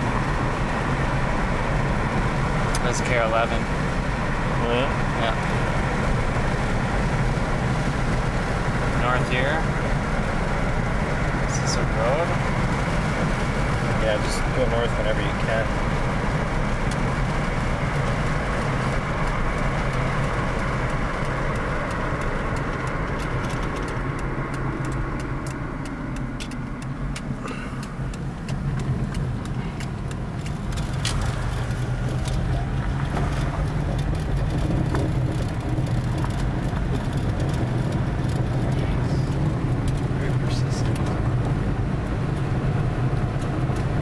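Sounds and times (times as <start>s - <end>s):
car engine drone: 0.0s - 44.0s
road and tyre noise: 0.0s - 44.0s
faint ticks: 19.2s - 32.4s.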